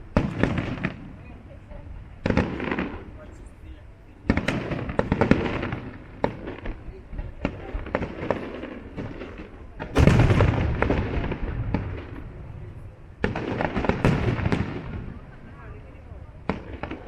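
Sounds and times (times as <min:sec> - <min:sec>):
fireworks bangs and crackles: 0:00.0 - 0:17.0
fireworks shell bursts rumbling: 0:04.3 - 0:17.0.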